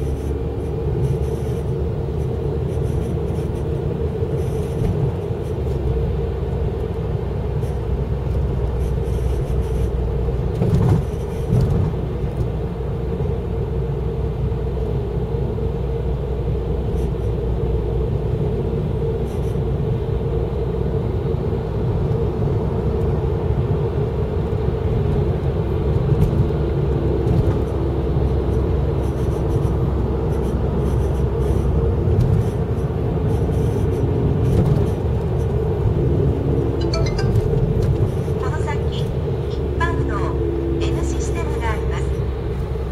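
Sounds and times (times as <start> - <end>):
constant whine: 0.0 - 42.9
low steady tone: 36.8 - 38.6.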